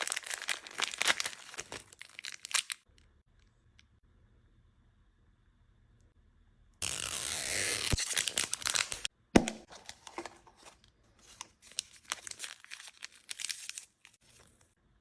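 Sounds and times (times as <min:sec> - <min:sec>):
plastic packaging crinkling and tearing: 0:00.0 - 0:02.9, 0:06.9 - 0:14.7.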